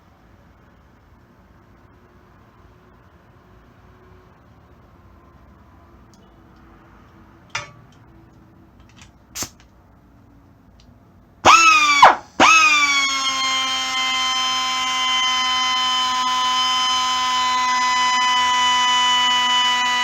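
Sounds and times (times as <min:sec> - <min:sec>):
air die grinder whining: 0:11.4 - 0:20.0.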